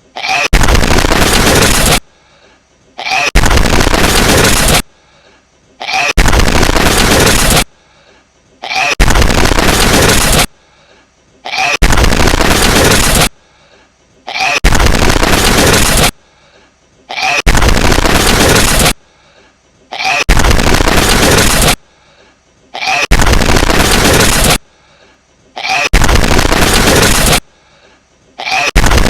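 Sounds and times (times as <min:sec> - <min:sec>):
distorted sneeze blast: 0:11.6 - 0:13.3, 0:28.5 - 0:29.0.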